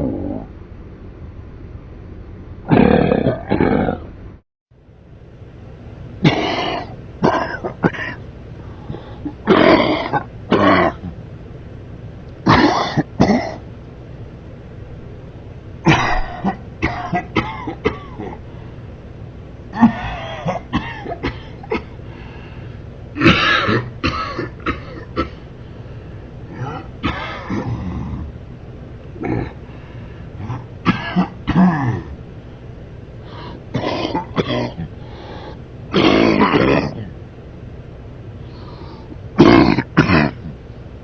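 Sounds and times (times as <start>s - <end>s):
steady low hum: 0.0s - 41.0s
man coughing: 6.2s - 8.2s, 9.3s - 11.1s, 12.5s - 13.6s, 15.8s - 18.4s, 19.7s - 22.0s, 23.2s - 25.4s, 26.5s - 28.2s, 29.2s - 29.6s, 30.4s - 32.2s, 33.4s - 35.0s, 35.9s - 37.2s, 39.4s - 40.6s.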